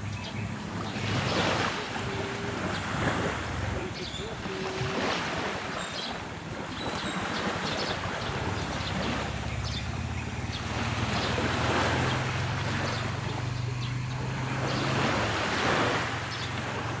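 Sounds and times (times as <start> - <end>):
wind on microphone: 0.0 - 10.0
low engine hum: 0.0 - 17.0
sea waves washing onto shore: 0.0 - 17.0.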